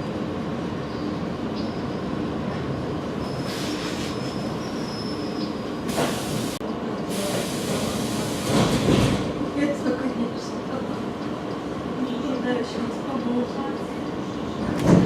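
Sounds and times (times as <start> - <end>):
train wheels rumbling: 0.0 - 15.0
high wheel squeal: 3.2 - 5.6.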